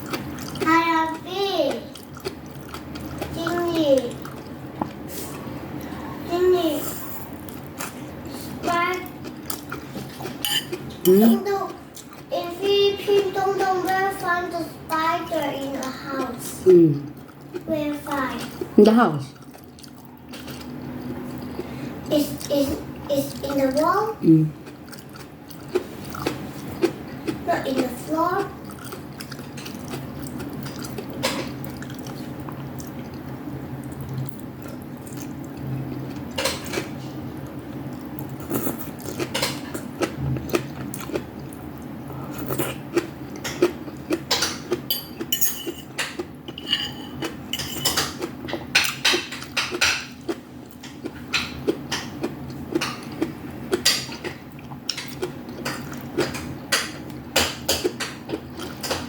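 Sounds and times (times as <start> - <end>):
steady low hum: 0.0 - 59.0
metal cutlery clinking on a plate: 10.4 - 11.4, 44.3 - 48.2.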